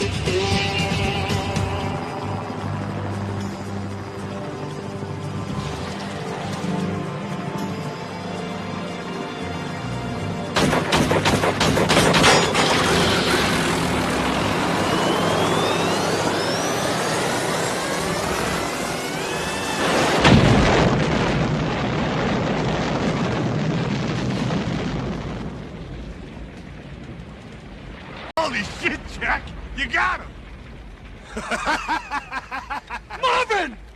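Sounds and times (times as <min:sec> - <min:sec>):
film score music: 0:00.0 - 0:22.4
pistol shots: 0:10.6 - 0:13.1
rising whine: 0:12.8 - 0:21.1
heavy boom: 0:19.8 - 0:31.3.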